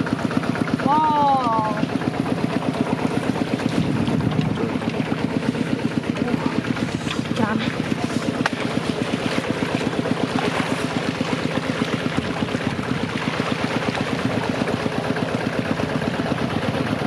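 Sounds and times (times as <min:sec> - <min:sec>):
small engine running: 0:00.0 - 0:17.0.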